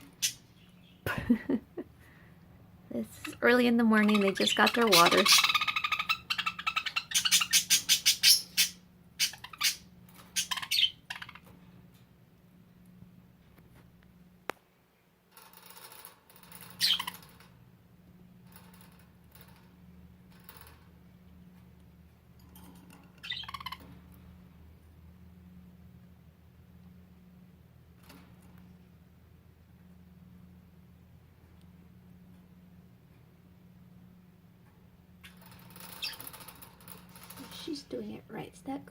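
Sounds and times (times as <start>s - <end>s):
budgerigars squawking: 3.2s - 11.4s.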